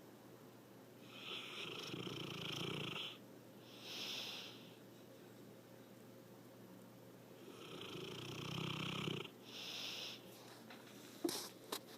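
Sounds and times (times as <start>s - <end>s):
snoring: 1.2s - 3.2s, 7.4s - 9.3s.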